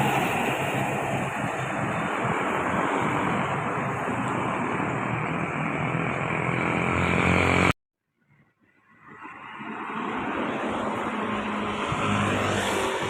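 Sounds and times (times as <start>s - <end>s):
heavy vehicle engine running: 0.0s - 7.7s
wind and tyre hiss: 0.0s - 7.7s, 8.6s - 13.0s.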